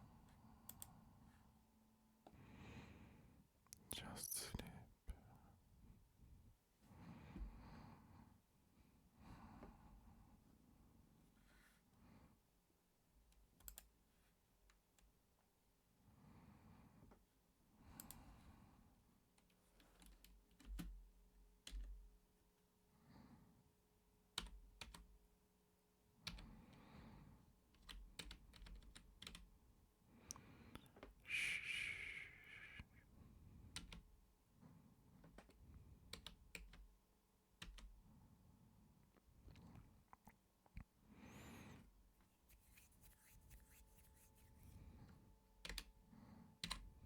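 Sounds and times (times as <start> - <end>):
soft slow breaths: 2.3 - 12.5, 30.1 - 33.9, 41.0 - 45.4, 46.0 - 47.0
computer keyboard typing: 19.8 - 21.0, 21.6 - 22.0, 24.4 - 25.1, 27.7 - 29.5, 33.7 - 34.0, 35.3 - 36.9, 37.6 - 37.9, 45.6 - 45.9, 46.6 - 46.9.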